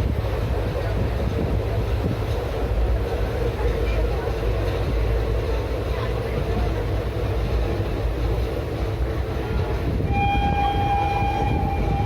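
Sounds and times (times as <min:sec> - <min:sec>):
train rumbling: 0:00.0 - 0:12.0
train horn held note: 0:10.1 - 0:12.0.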